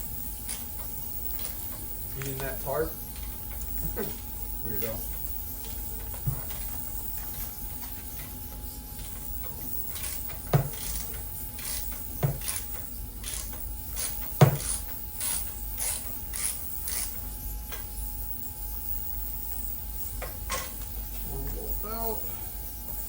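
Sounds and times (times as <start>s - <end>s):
socket ratchet clicking: 9.9s - 17.2s.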